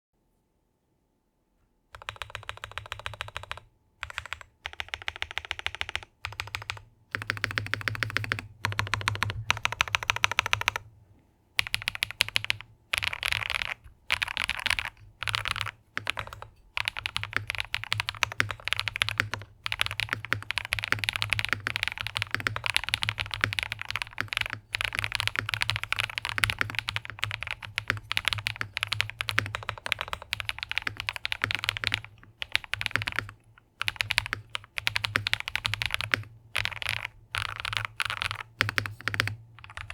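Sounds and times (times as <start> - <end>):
fast mechanical keyboard typing: 2.0 - 10.9, 11.6 - 39.9.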